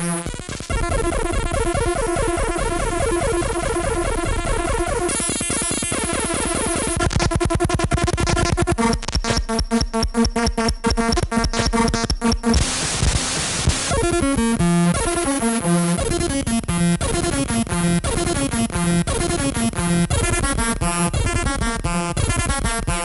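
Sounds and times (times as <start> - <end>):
burst of static: 12.6 - 14.4.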